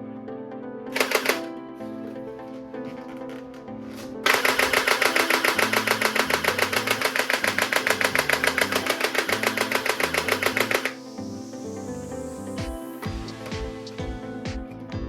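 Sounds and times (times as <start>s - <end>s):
background music: 0.0s - 15.0s
toy gun firing full-auto: 1.0s - 1.5s, 4.2s - 11.0s.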